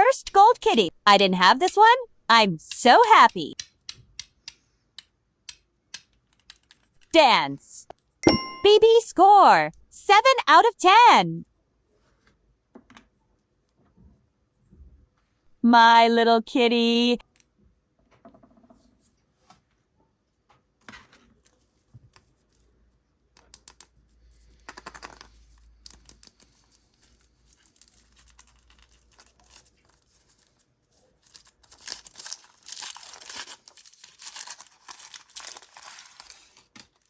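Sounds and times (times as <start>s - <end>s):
packaging tearing and crinkling: 25.8s - 30.6s, 31.2s - 37.0s.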